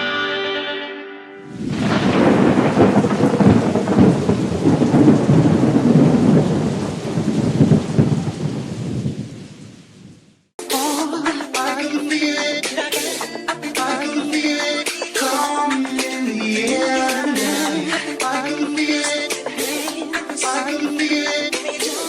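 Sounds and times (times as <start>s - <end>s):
heavy rain: 1.4s - 11.4s, 13.0s - 22.0s
thunder rumbling: 1.5s - 10.2s.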